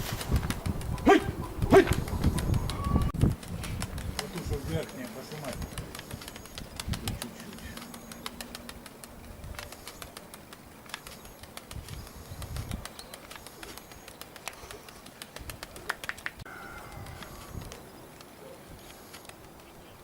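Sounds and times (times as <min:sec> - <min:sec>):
wind on microphone: 0:00.0 - 0:07.8, 0:11.7 - 0:13.0, 0:15.4 - 0:18.0
pigeon wings flapping: 0:00.0 - 0:19.8
sharp clicks and claps: 0:12.5 - 0:16.5.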